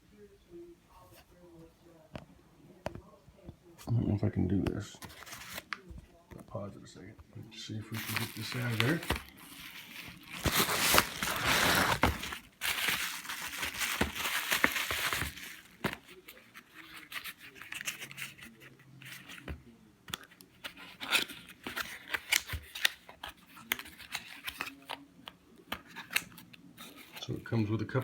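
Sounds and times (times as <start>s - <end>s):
packaging being torn and crinkled: 7.9s - 18.5s, 20.6s - 24.9s.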